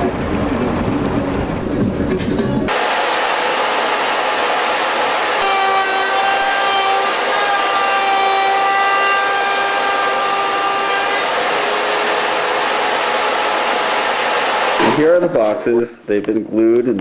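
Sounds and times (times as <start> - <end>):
steady whine: 0.0 - 15.0
woodworking machine whirring: 2.7 - 14.8.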